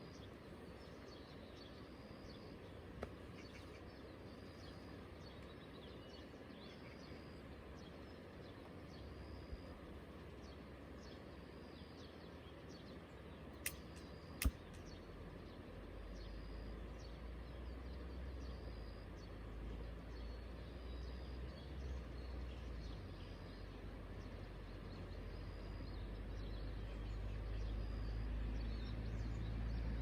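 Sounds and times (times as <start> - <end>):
small birds chirping: 0.0 - 30.0
sharp clicks: 13.6 - 15.0.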